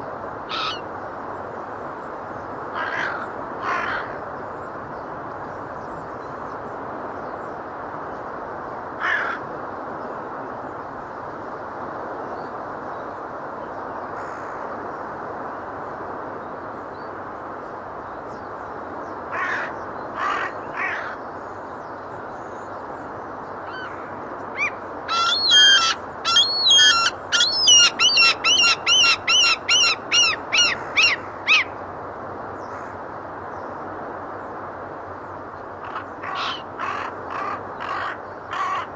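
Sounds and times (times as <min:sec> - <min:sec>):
gulls calling: 0:00.4 - 0:00.9, 0:19.4 - 0:21.2, 0:23.6 - 0:31.8, 0:35.7 - 0:38.9.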